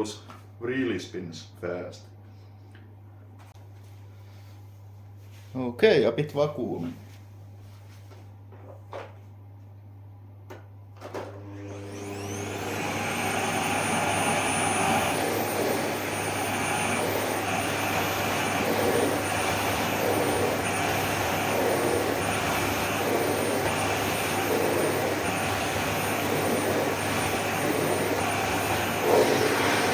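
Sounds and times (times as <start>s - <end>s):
vacuum cleaner motor whine: 11.0s - 29.9s
vacuum brush on carpet: 11.4s - 29.9s.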